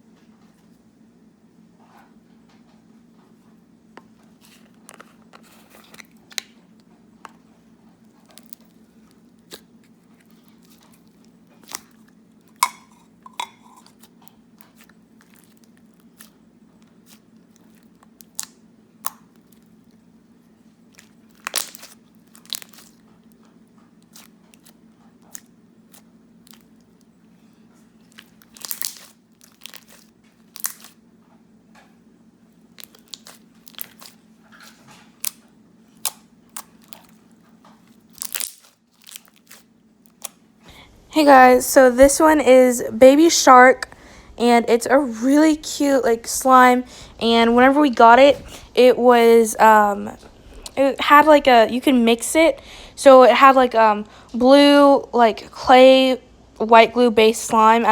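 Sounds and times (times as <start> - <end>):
faint steady hum: 0.0 - 57.9
slime beads crunching: 9.4 - 19.8, 20.9 - 23.0, 24.0 - 27.0, 28.0 - 31.0, 32.7 - 40.4.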